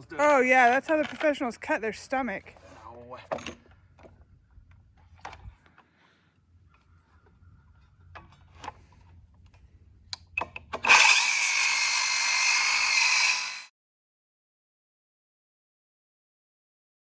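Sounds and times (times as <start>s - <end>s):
power drill whine: 10.4s - 13.7s.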